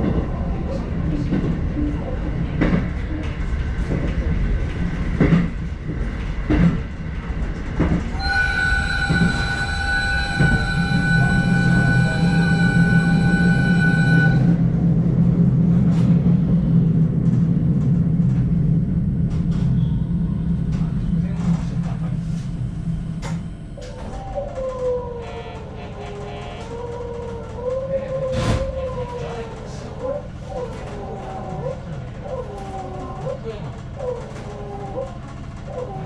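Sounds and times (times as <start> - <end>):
electric train running: 7.8 - 15.0
steady high-pitched tone: 8.2 - 14.6.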